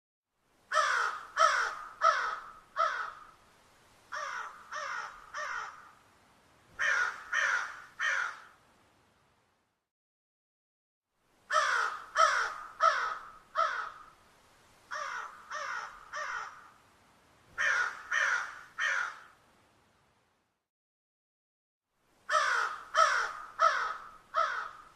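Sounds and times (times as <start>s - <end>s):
crow cawing: 0.7s - 3.4s, 4.1s - 6.0s, 6.8s - 8.6s, 11.5s - 14.2s, 14.9s - 16.8s, 17.6s - 19.4s, 22.3s - 24.9s.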